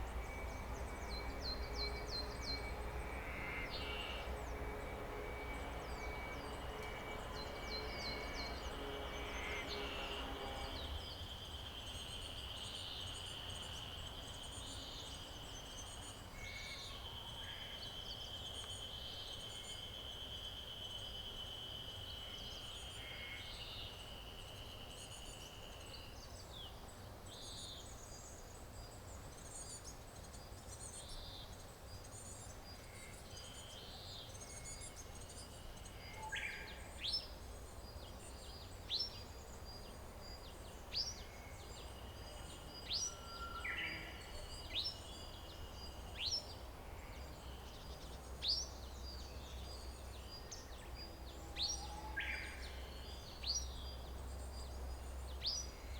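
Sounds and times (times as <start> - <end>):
low background rumble: 0.0 - 11.2.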